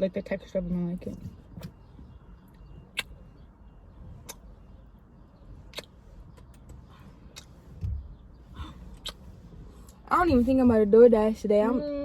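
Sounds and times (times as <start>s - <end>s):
low rumble inside car cabin: 0.0s - 12.0s.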